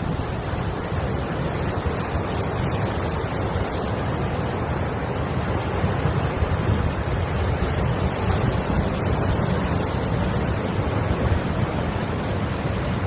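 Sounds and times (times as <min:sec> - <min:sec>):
sea waves washing: 0:00.0 - 0:13.0
wind buffeting microphone: 0:00.0 - 0:13.0.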